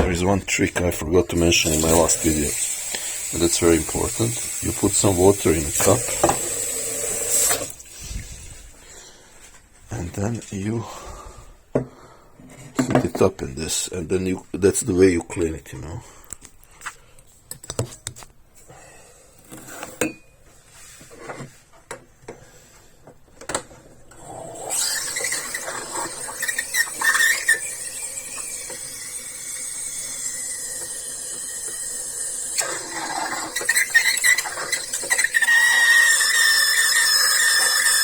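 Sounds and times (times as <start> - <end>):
steam wand hissing and squealing: 24.6 - 38.0.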